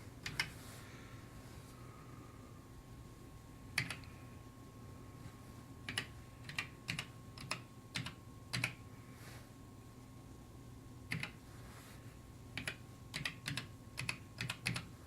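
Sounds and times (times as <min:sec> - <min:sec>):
faint high whine: 0:00.0 - 0:13.1
keyboard typing clicks: 0:00.2 - 0:00.6, 0:03.8 - 0:04.1, 0:05.9 - 0:08.8, 0:11.1 - 0:11.4, 0:12.6 - 0:14.9.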